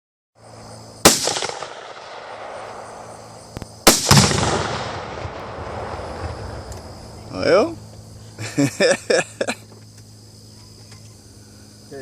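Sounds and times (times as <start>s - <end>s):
rifle shot crack: 1.0s - 3.2s, 3.8s - 6.9s
explosive boom with rumbling tail: 3.9s - 7.2s.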